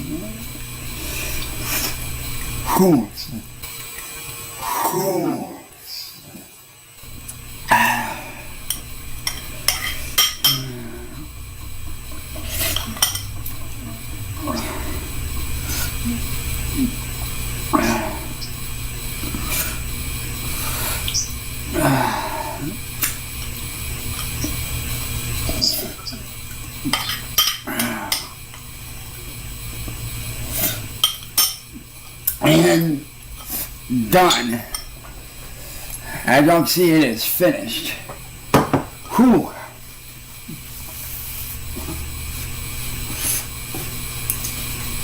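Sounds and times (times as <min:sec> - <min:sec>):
steady low hum: 0:00.0 - 0:45.0
chopsticks clinking on a bowl: 0:12.6 - 0:13.3
person slurping noodles: 0:14.4 - 0:17.0, 0:17.7 - 0:18.5.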